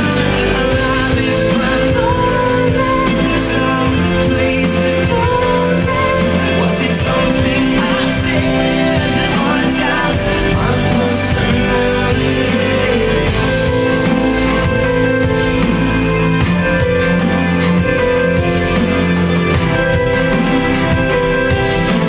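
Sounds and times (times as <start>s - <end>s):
song with singing voice: 0.0s - 22.0s.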